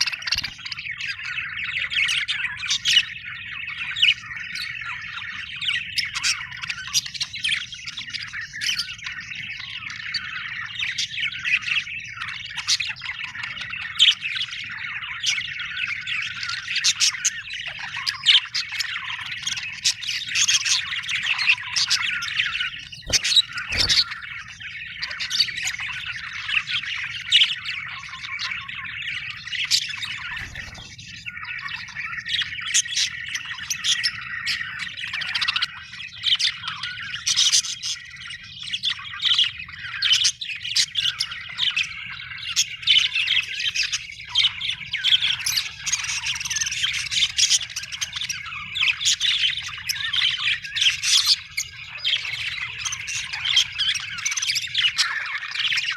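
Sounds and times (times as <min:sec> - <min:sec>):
budgerigars chattering: 0:00.0 - 0:55.9
sharp bird squawks: 0:20.5 - 0:26.5.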